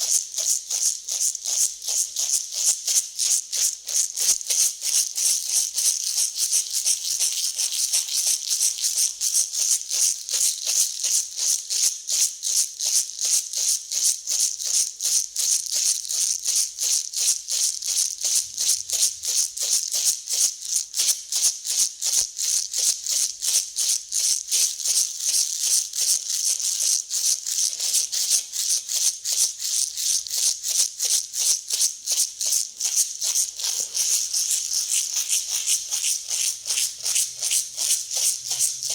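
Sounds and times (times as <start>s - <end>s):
dry grain rattling: 31.9s - 38.9s.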